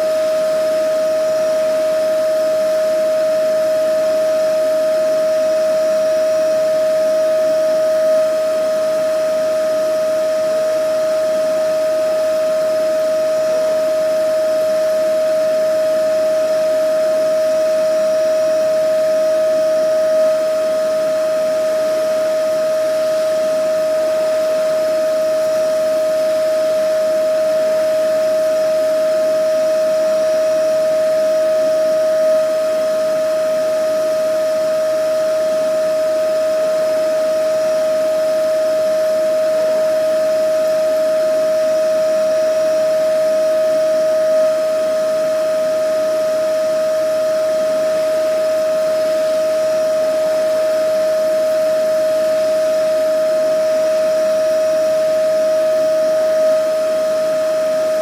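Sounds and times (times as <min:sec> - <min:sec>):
vacuum cleaner running: 0:04.0 - 0:58.0.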